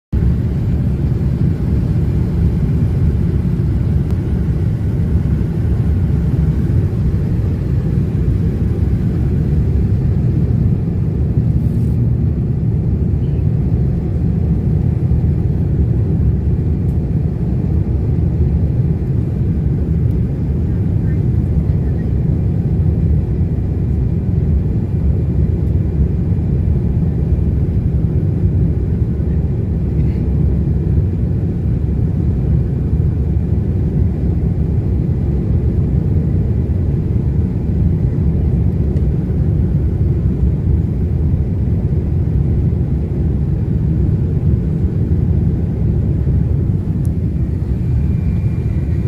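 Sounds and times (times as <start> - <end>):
airliner low rumble: 0.1 - 49.0
faint thin whine: 46.7 - 49.0.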